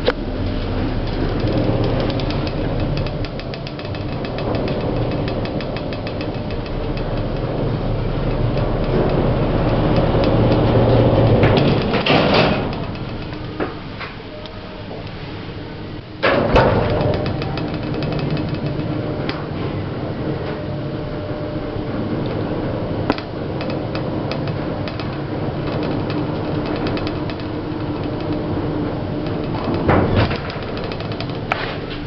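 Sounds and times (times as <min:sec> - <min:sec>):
lift mechanical hum: 0:00.0 - 0:32.0
rattle of small clicks: 0:01.0 - 0:13.7, 0:16.3 - 0:19.4, 0:23.1 - 0:32.0.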